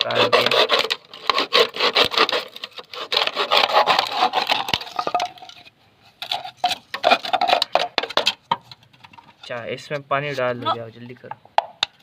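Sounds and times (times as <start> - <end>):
knife sawing plastic bottle: 0.0 - 5.1.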